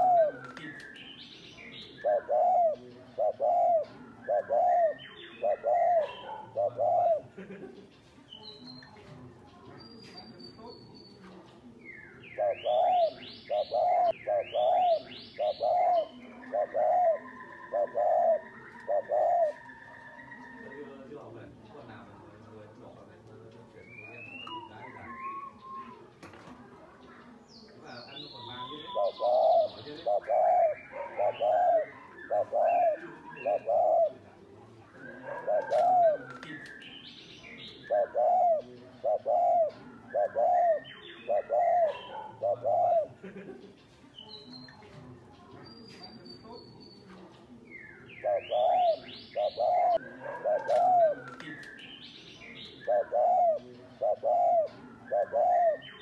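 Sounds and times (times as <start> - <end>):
dove cooing: 0.0 - 0.9, 1.5 - 8.0, 12.1 - 21.2, 28.3 - 43.7, 48.0 - 51.6, 52.4 - 56.0
bird chirping: 0.0 - 22.1, 27.0 - 34.2, 34.9 - 56.0.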